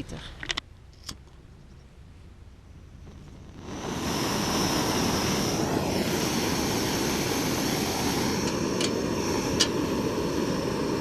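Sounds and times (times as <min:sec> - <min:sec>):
stove burner rushing: 0:03.1 - 0:11.0.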